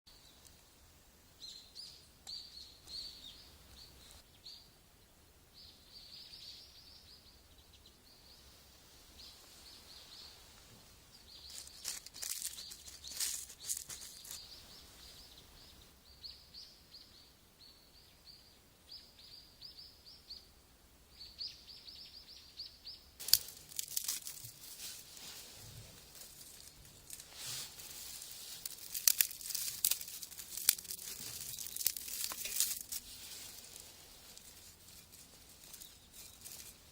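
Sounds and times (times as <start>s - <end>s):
small birds chirping: 0.1s - 36.9s
sharp crackling and crunching: 11.3s - 14.6s, 23.2s - 36.9s.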